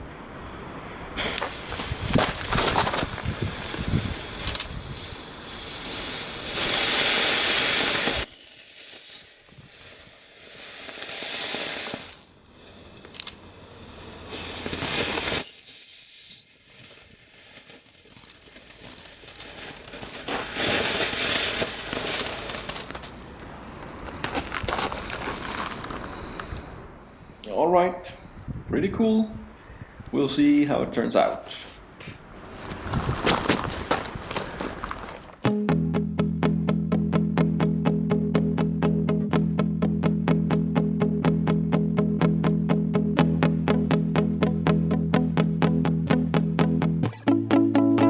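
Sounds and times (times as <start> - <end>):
fireworks hissing: 1.1 - 26.9
high descending firework whistle: 8.0 - 9.5, 14.3 - 16.6.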